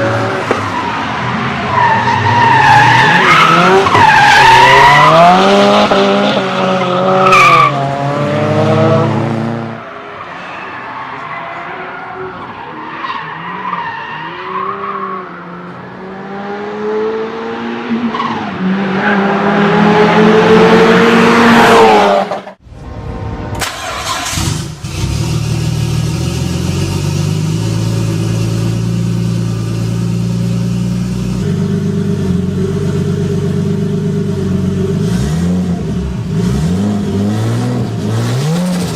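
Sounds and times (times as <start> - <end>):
car engine revving: 0.0 - 9.8, 23.3 - 38.9.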